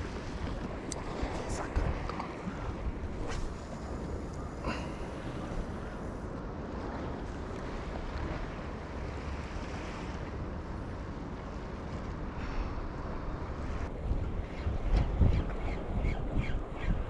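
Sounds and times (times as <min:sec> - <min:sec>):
waves washing: 0:00.0 - 0:14.0
wind buffeting microphone: 0:00.0 - 0:17.0.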